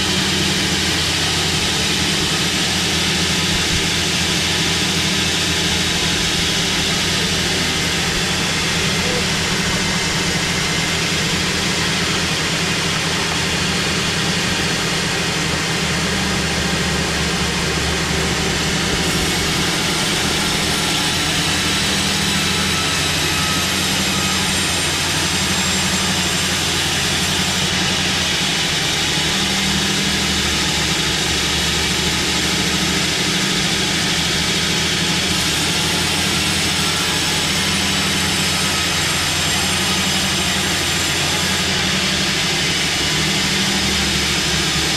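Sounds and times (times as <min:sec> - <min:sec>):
low machine drone: 0:00.0 - 0:44.9
saw blade hissing through wood: 0:18.6 - 0:44.9.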